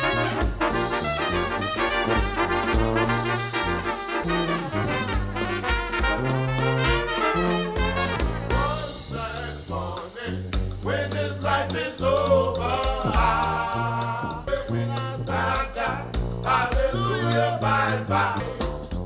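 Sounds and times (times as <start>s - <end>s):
brass band music: 0.0s - 19.0s
steady bass line: 0.0s - 19.0s.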